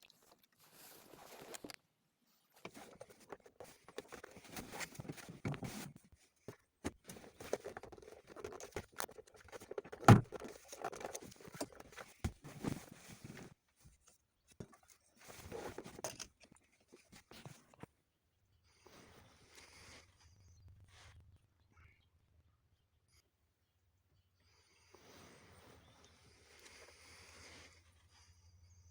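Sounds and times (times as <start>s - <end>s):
car parts being handled: 2.6s - 17.9s.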